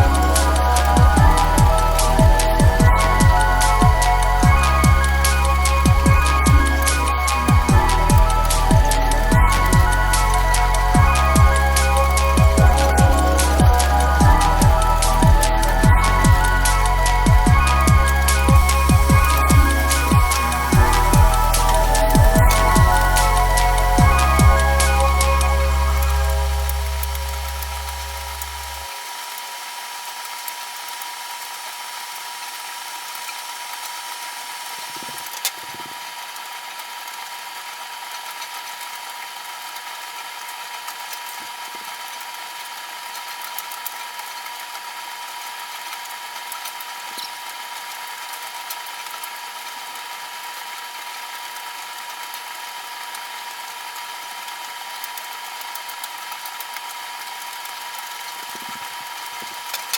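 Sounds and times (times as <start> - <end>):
constant high tone: 0.0 - 28.9
machine hum: 0.0 - 28.9.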